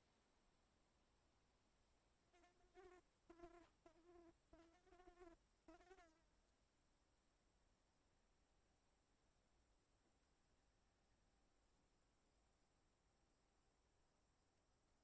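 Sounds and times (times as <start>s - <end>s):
flying insect buzzing: 2.4s - 6.2s.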